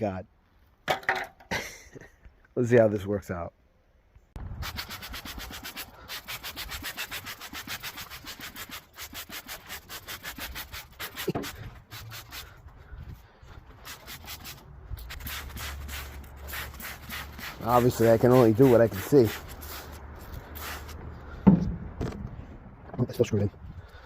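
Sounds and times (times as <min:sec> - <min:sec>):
hand scrubbing strokes: 0:04.6 - 0:21.4.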